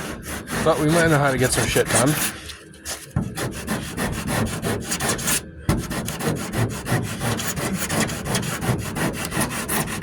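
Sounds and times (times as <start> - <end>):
sandpaper scraping body filler: 0.0 - 10.0.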